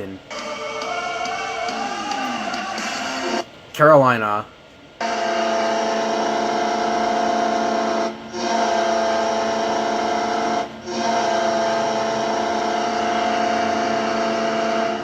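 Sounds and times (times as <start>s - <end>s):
goal horn blasts: 5.0s - 15.0s.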